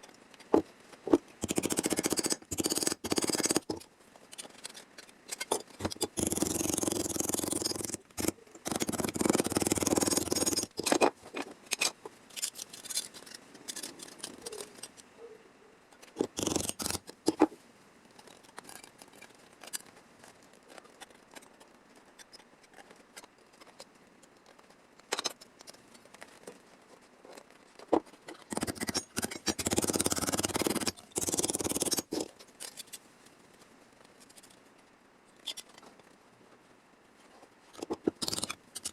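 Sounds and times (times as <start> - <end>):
snips cutting sheet steel: 5.9 - 11.0, 16.2 - 17.4, 28.4 - 32.3.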